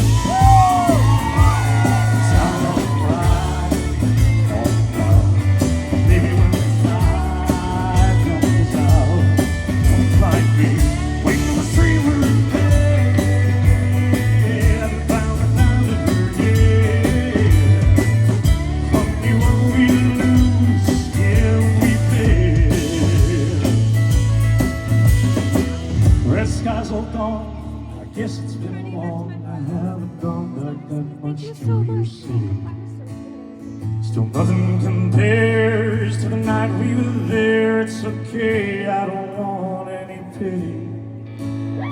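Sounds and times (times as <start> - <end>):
sharp drum beats: 0.0 - 26.8
heavy bass line: 0.0 - 29.5
live band music: 0.0 - 29.9
guitar: 0.0 - 41.9.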